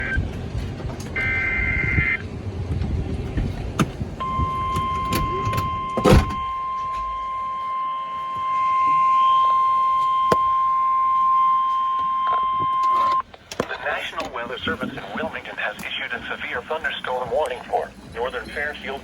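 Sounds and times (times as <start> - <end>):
steady warning alarm beep: 0.0 - 0.2, 1.2 - 2.2, 4.2 - 13.2
low noise: 0.0 - 19.0
data tones burst: 4.2 - 13.2.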